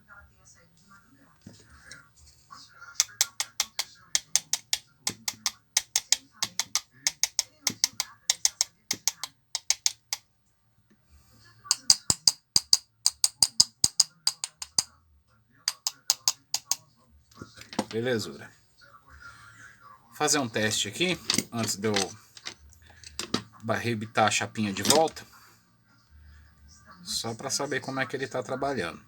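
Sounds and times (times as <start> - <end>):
screwdriver ratchet clicking: 3.0 - 10.2, 11.7 - 14.9.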